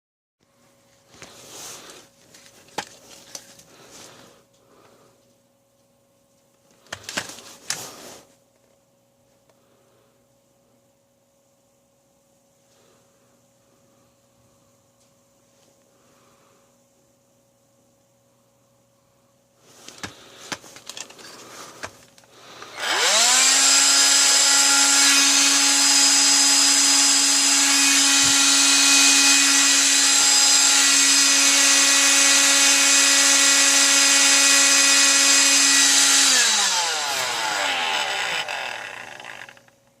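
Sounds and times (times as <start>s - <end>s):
vacuum cleaner motor whining: 22.6s - 39.7s.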